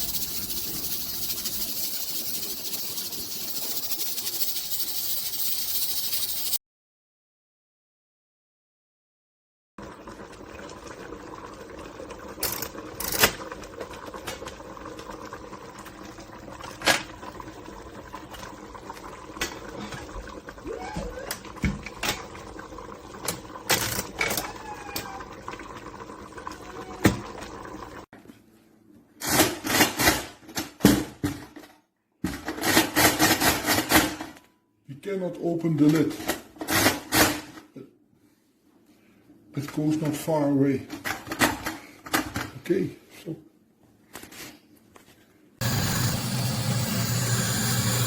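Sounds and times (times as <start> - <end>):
choppy clatter: 0.0 - 6.6.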